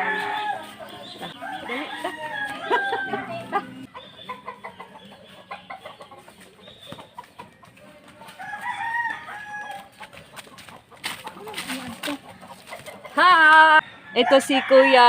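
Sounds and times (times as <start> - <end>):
rooster crowing: 0.0 - 0.7, 1.3 - 3.7, 8.4 - 9.9, 14.0 - 15.0
hens clucking: 0.0 - 15.0.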